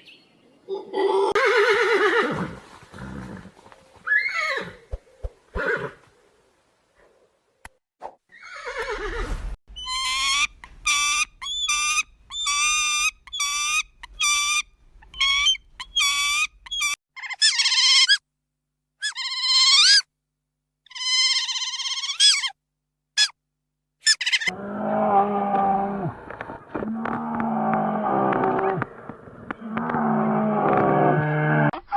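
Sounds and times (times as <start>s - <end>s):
animal high-pitched calls: 19.0s - 20.1s, 20.9s - 22.6s, 24.1s - 24.6s.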